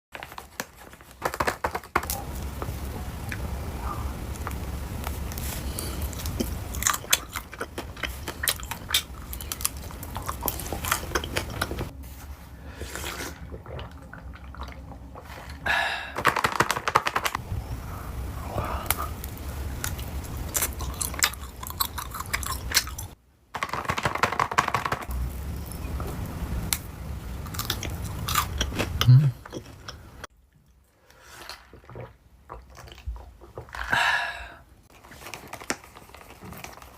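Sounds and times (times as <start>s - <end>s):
person chewing crunchy food: 4.5s - 11.9s, 19.8s - 23.2s, 27.4s - 30.2s
mouth noises: 28.5s - 30.2s.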